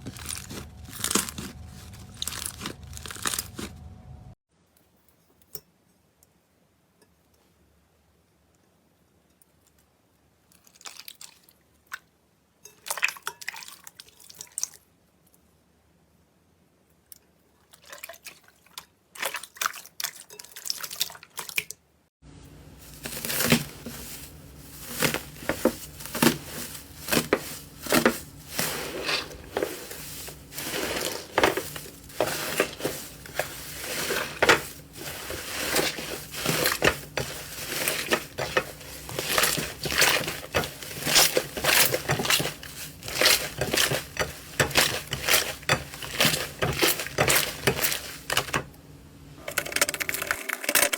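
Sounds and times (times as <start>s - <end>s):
faint steady hum: 22.2s - 50.9s.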